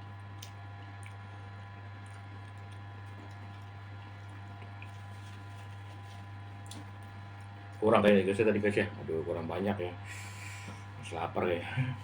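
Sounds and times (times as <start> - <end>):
steady low hum: 0.0 - 12.0
wet chewing clicks: 0.2 - 7.6.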